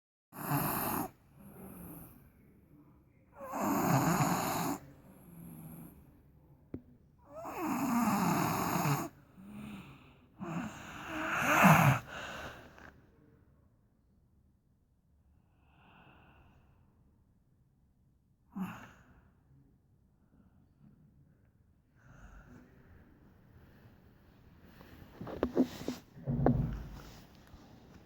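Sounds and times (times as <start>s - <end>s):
boy snoring: 0.4s - 2.2s, 3.4s - 4.8s, 7.3s - 12.8s, 18.6s - 19.0s
soft breaths: 0.4s - 13.2s, 21.9s - 28.0s.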